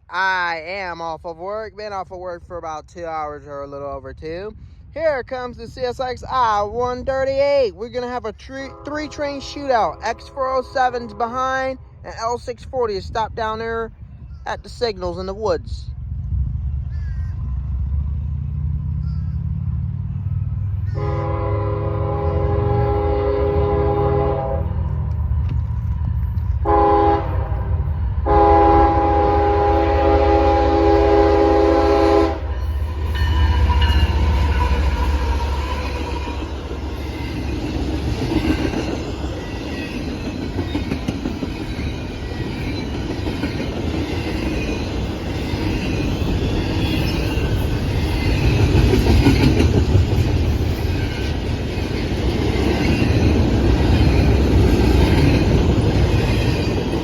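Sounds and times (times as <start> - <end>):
rattling train wheels: 0.0 - 57.0
train rumbling past: 0.0 - 57.0
locomotive horn blasts: 8.7 - 11.7, 21.0 - 24.9, 26.6 - 36.6.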